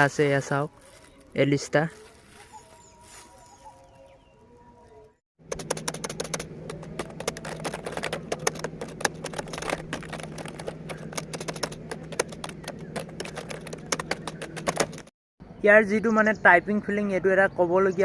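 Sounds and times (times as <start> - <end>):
keyboard typing clicks: 5.4 - 15.1.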